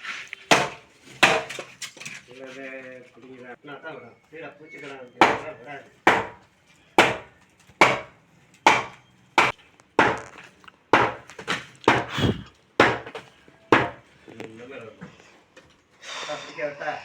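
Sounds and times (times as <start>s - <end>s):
heavy blows on wood: 11.9s - 13.1s.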